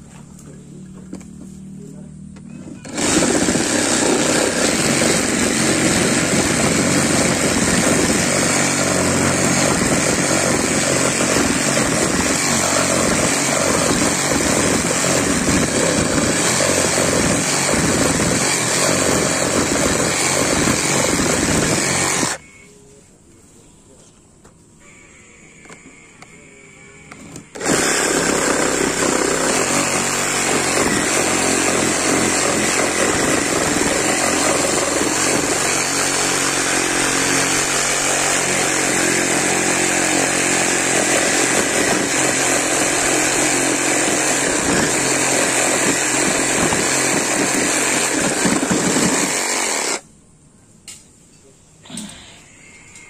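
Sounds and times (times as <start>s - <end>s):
reciprocating saw cutting wood: 2.8s - 22.5s, 27.2s - 50.0s.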